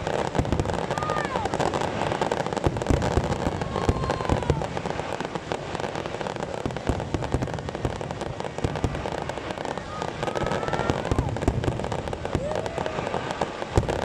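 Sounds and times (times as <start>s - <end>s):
firework bangs: 0.0s - 14.0s
firework crackle: 0.0s - 14.0s
firework whistle: 0.0s - 14.0s.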